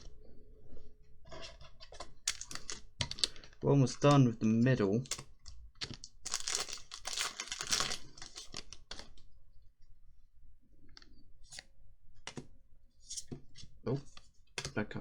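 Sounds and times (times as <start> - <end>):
cards and packaging rustling: 1.3 - 4.4, 5.0 - 9.3.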